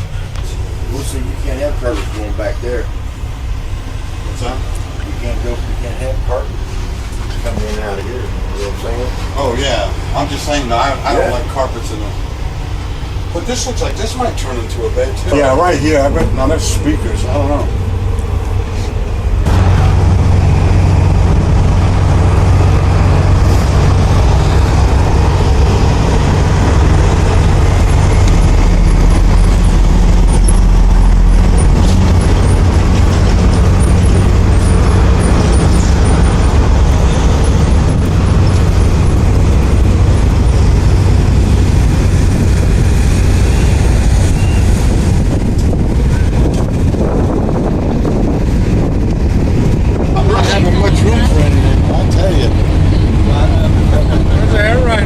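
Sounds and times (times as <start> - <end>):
heavy truck engine running: 0.0 - 55.0.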